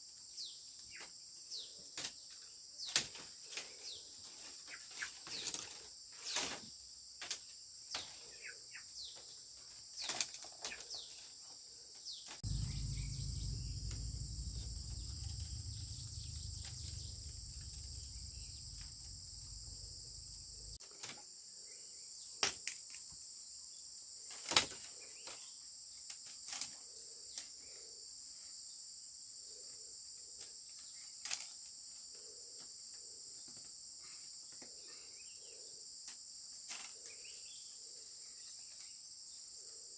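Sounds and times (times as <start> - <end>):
high-pitched insect chorus: 12.4 - 20.8
low rumble: 12.4 - 20.8.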